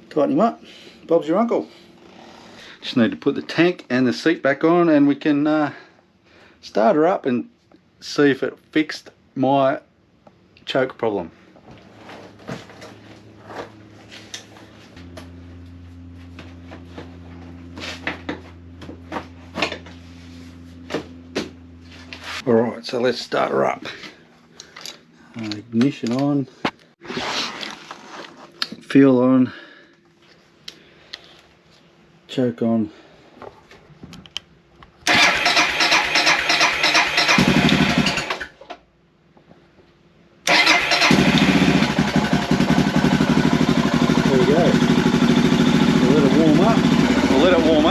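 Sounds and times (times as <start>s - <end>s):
steady low hum: 0.0s - 27.0s
motorcycle engine running: 11.9s - 22.4s, 35.1s - 38.3s, 40.6s - 47.9s
tools and metal parts clattering: 24.6s - 26.4s
electric starter cranking: 35.0s - 38.6s, 40.4s - 47.9s.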